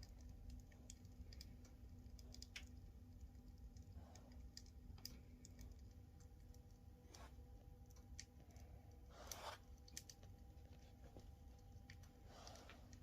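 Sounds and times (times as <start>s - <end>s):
steady low hum: 0.0s - 13.0s
puppy breathing softly: 12.1s - 13.0s.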